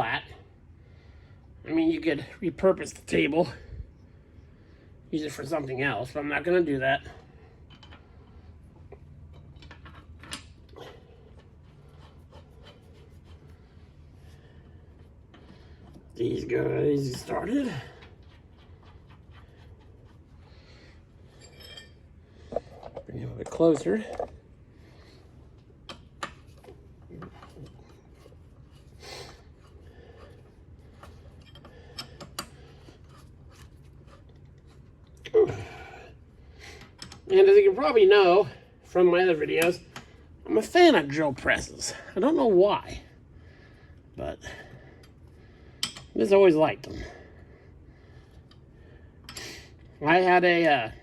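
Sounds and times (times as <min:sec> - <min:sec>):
steady low hum: 0:00.0 - 0:51.0
metal tools clicking and tapping: 0:07.7 - 0:08.1, 0:31.0 - 0:34.2, 0:36.8 - 0:37.3, 0:45.8 - 0:46.2.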